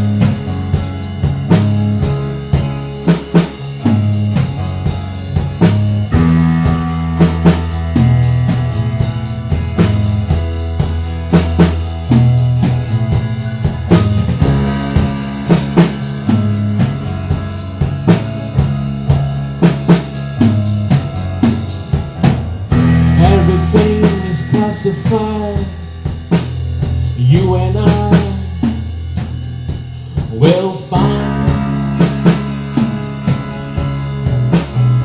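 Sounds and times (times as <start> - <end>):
bass guitar: 0.0 - 35.0
drum kit beat: 0.0 - 35.0
guitar chords: 0.0 - 35.0
rock band music: 0.0 - 35.0
melody line: 22.2 - 27.8.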